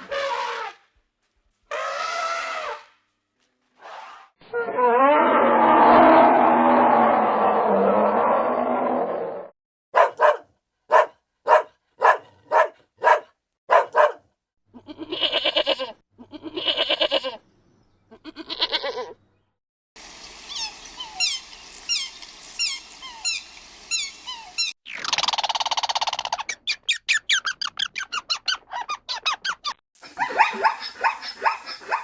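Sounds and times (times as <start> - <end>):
short sharp barks: 10.0 - 14.2
long wavering bleats: 14.8 - 17.4, 18.1 - 19.2.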